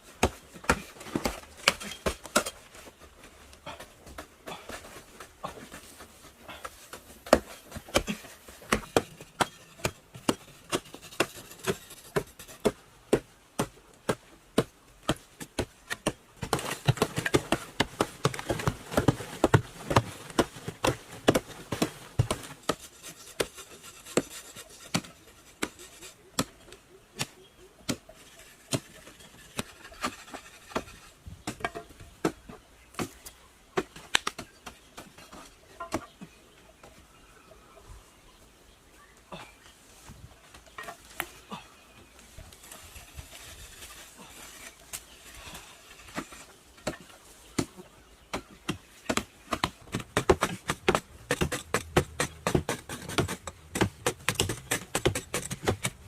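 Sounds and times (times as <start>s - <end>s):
rubbing and scraping: 4.7s - 12.8s, 15.4s - 26.7s, 27.9s - 31.9s, 42.4s - 47.3s, 48.4s - 56.0s.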